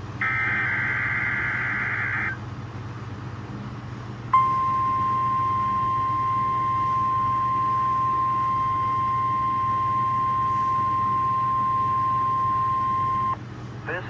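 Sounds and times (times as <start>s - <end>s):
radio hum and hiss: 0.1s - 2.4s, 5.4s - 14.0s
steady high alarm tone: 4.4s - 13.4s.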